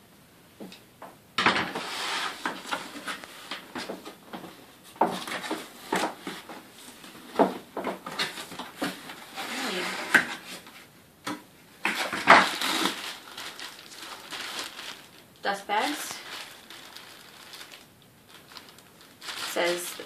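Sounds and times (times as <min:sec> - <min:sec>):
cardboard rubbing: 0:05.1 - 0:10.9, 0:11.8 - 0:15.1.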